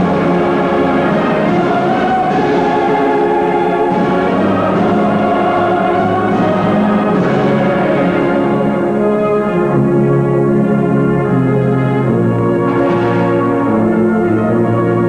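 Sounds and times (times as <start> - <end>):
choir singing held notes: 0.0 - 15.0
orchestra playing: 0.0 - 15.0.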